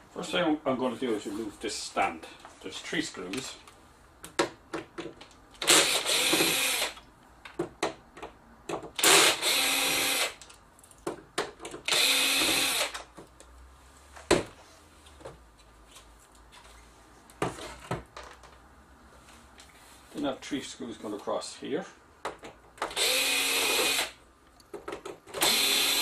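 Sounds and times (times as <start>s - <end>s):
cordless screwdriver running: 5.6s - 7.0s, 9.0s - 10.4s, 11.9s - 13.0s, 22.9s - 24.2s, 25.4s - 26.0s
handling clicks and knocks: 24.6s - 25.4s.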